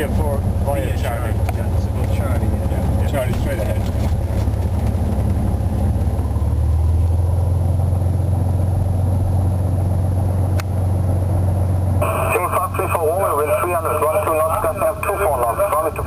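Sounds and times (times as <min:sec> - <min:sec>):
aircraft piston engine drone: 0:00.0 - 0:16.0.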